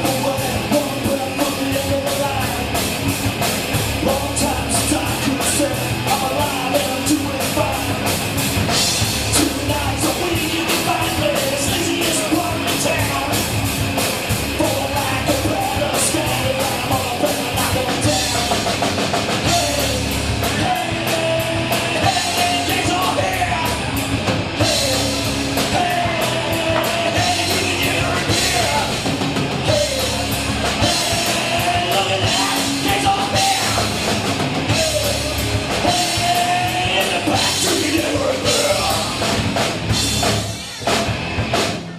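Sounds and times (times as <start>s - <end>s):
drum kit: 0.0s - 41.9s
rock music: 0.0s - 41.9s
person singing: 9.3s - 13.5s, 19.4s - 24.0s, 24.6s - 34.1s, 34.7s - 39.4s.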